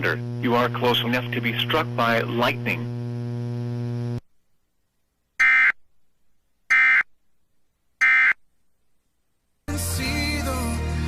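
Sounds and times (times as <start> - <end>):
steady hum: 0.0 - 5.4.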